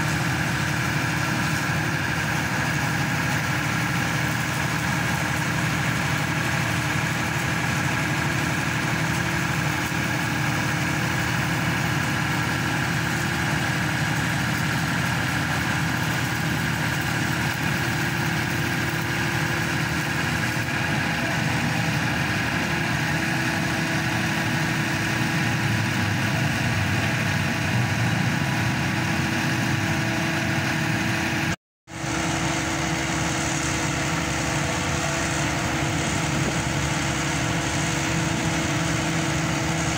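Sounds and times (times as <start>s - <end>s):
pile driver engine hum: 0.0s - 39.9s.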